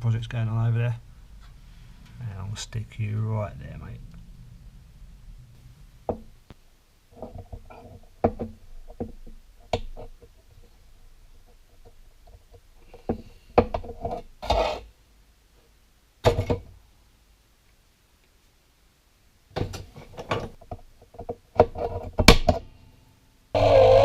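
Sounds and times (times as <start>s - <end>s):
objects knocking and tapping: 6.0s - 6.4s, 7.1s - 10.7s, 11.4s - 14.3s, 16.2s - 16.8s, 19.5s - 22.6s.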